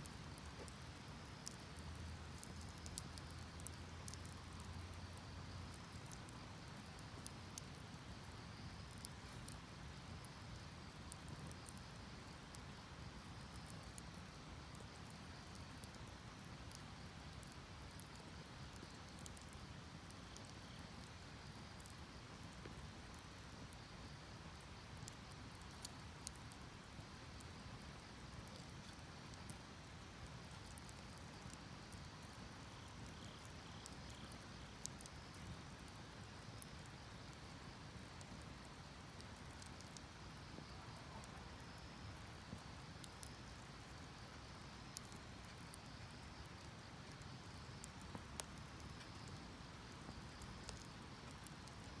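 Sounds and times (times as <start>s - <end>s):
faint insect chirping: 0.0s - 52.0s
wood fire crackling and popping: 0.0s - 52.0s.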